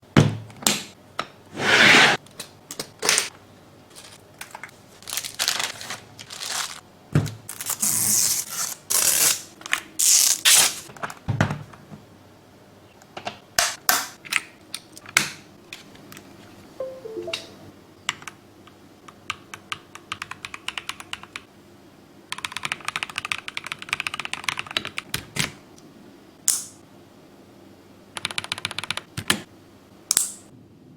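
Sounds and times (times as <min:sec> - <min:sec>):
packaging scraping and rustling: 0:05.0 - 0:06.8.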